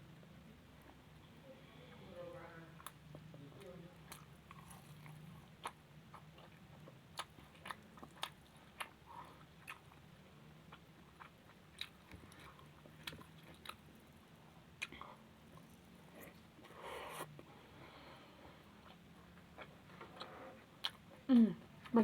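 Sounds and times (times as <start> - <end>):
faint low hum: 0.0 - 22.0
close chewing: 3.6 - 10.0, 10.7 - 17.2.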